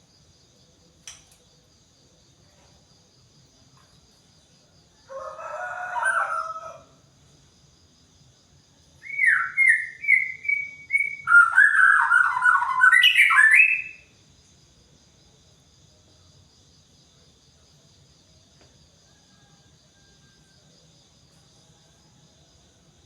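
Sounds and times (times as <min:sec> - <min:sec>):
bird singing: 0:09.0 - 0:14.1
repeated whistled bird notes: 0:09.0 - 0:14.1.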